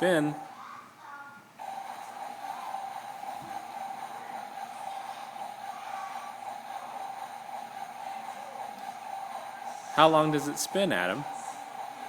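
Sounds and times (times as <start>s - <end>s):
toy washing machine whirring: 0.0s - 12.0s.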